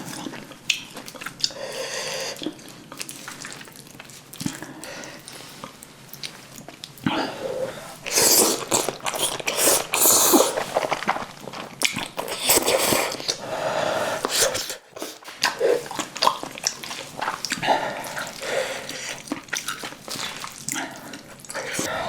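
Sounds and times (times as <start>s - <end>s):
wet chewing and lip smacking: 0.0s - 7.2s, 8.0s - 13.5s, 14.2s - 22.0s
slurping: 7.0s - 22.0s.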